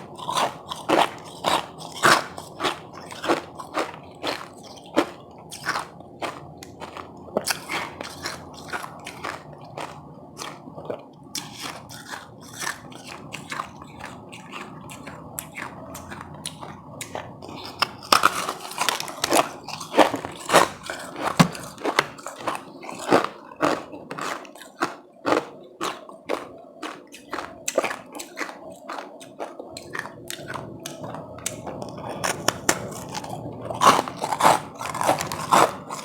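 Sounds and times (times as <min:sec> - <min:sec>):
person crunching ice: 0:00.2 - 0:10.6, 0:17.5 - 0:29.1, 0:29.8 - 0:36.0.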